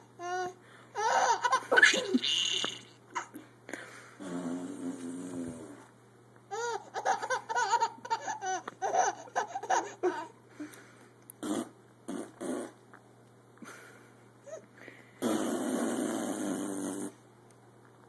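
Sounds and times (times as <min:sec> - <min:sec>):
baby laughing: 0:00.0 - 0:03.4, 0:06.5 - 0:10.4
low buzzing fart: 0:04.2 - 0:05.9, 0:11.4 - 0:12.9, 0:15.2 - 0:17.2.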